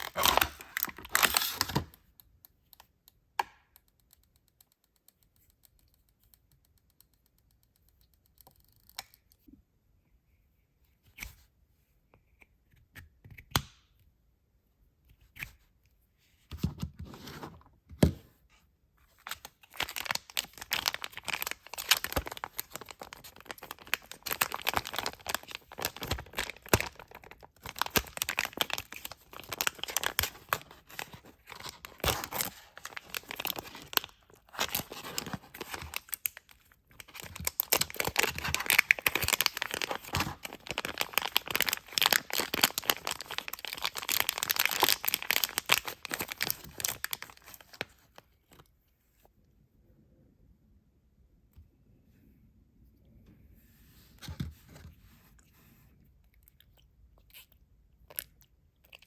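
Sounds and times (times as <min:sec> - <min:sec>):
packaging tearing and crinkling: 0:00.0 - 0:01.9, 0:19.2 - 0:47.9.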